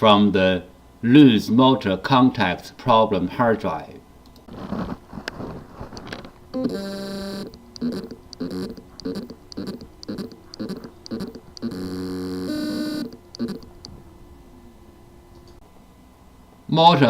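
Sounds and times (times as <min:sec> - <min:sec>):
hard drive motor buzzing: 0:06.6 - 0:14.6.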